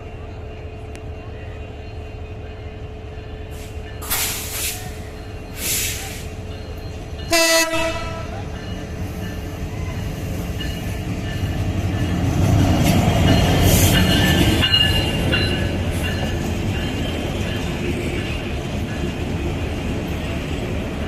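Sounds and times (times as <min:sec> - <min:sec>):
passenger train rumbling: 0:00.0 - 0:21.0
wheels squealing on rails: 0:01.1 - 0:21.0
brief hiss: 0:03.6 - 0:06.3
diesel locomotive horn blast: 0:07.3 - 0:08.5.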